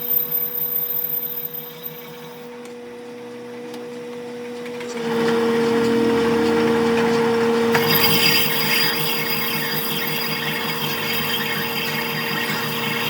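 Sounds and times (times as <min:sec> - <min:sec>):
machine hum: 0:05.0 - 0:13.0
power tool hissing on metal: 0:07.8 - 0:13.0.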